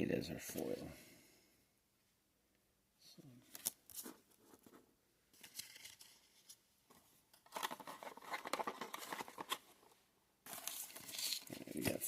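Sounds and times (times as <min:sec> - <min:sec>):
wrapper crinkling and tearing: 0:07.4 - 0:09.6.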